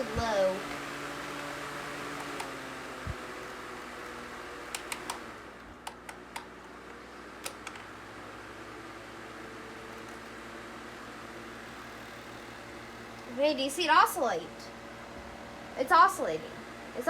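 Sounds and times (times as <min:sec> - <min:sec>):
table fan winding down: 0:00.0 - 0:17.0
light clicks: 0:04.0 - 0:05.2.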